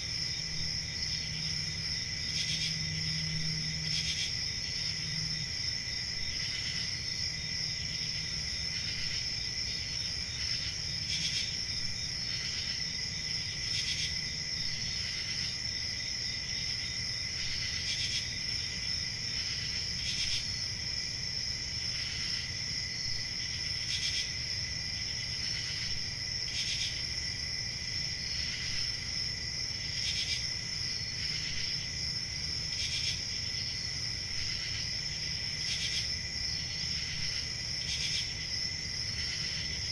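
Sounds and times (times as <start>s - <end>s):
crickets trilling: 0.0s - 39.9s.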